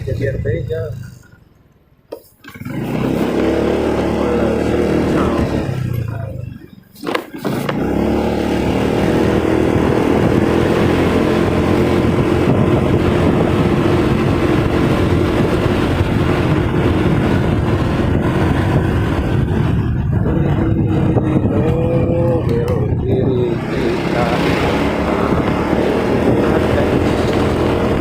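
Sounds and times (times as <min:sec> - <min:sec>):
motorcycle engine cruising: 0:00.0 - 0:28.0
wind rushing over microphone: 0:07.6 - 0:28.0.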